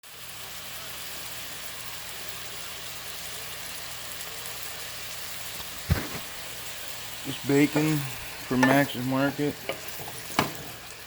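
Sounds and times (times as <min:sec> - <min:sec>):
meat sizzling in a pan: 0:00.0 - 0:11.0.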